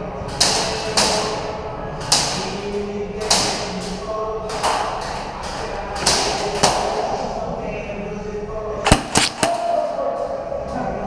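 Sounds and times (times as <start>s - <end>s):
airsoft gun cracks: 8.9s - 9.6s.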